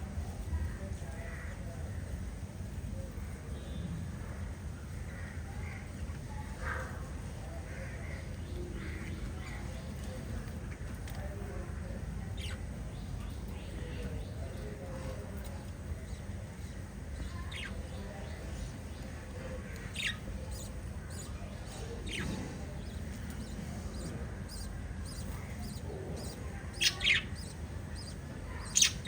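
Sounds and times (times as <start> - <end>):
low background hum: 0.0 - 29.0
parrots chirping: 17.3 - 17.8, 19.8 - 29.0.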